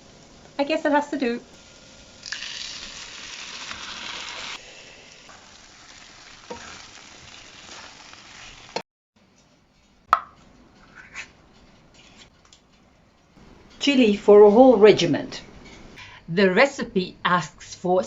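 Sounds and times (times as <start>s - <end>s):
vegetables sizzling in a pan: 0.0s - 8.8s.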